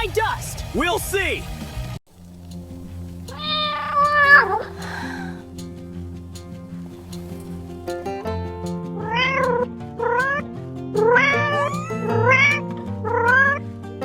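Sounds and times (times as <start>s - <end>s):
soft background music: 0.0s - 14.0s
cat meowing: 3.3s - 4.8s.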